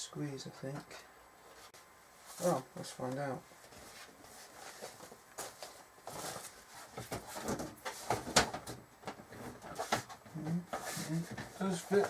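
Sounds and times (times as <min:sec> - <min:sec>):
computer case parts scraping: 0:03.8 - 0:12.0.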